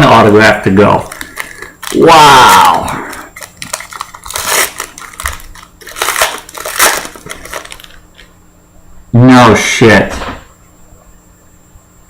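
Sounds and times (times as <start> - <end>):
card packaging crinkling and rustling: 0.9 - 8.3.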